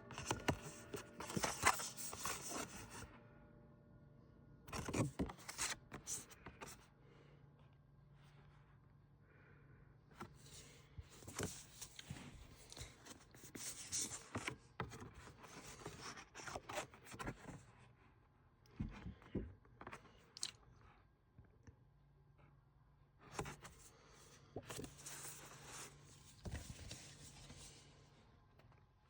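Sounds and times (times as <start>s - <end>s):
plastic case handling noise: 0.1s - 3.0s.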